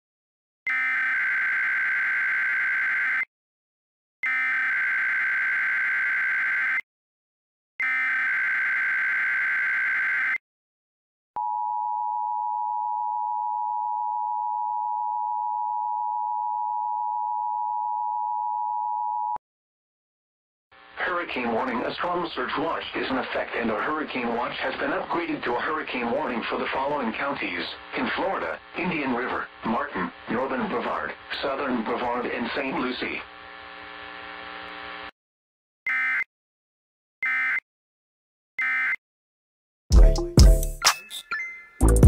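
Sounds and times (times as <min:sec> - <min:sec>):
screeching digital data bursts: 0:07.8 - 0:10.4.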